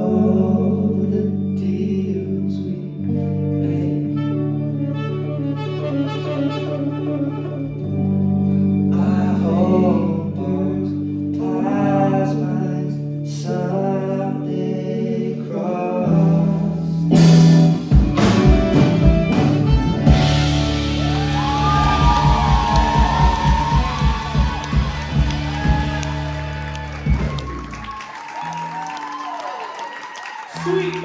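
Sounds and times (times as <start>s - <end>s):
person singing over held chords: 0.0s - 5.4s, 8.7s - 17.7s
steady music beat: 21.2s - 27.6s.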